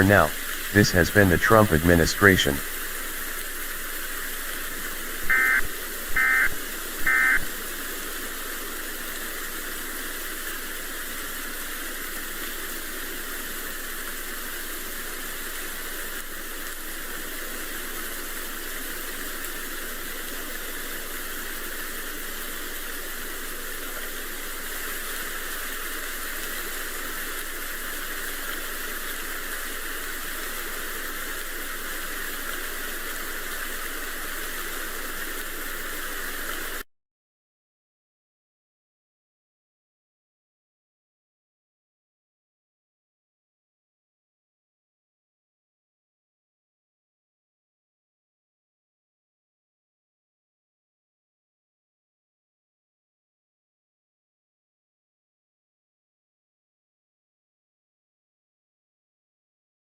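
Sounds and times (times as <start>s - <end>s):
static hiss: 0.0s - 36.9s
warbling digital data tones: 5.2s - 7.5s.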